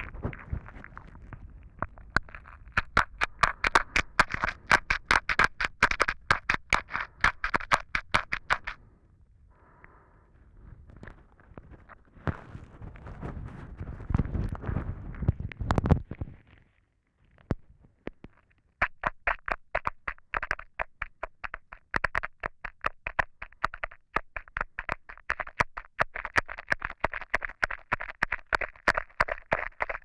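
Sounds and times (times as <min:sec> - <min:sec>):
wet saliva clicks: 0:01.8 - 0:08.8.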